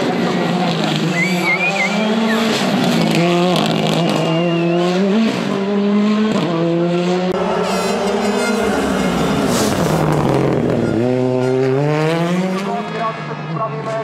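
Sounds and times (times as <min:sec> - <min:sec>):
rally car engine accelerating: 0:00.0 - 0:14.0
brief high squeal: 0:07.4 - 0:12.1.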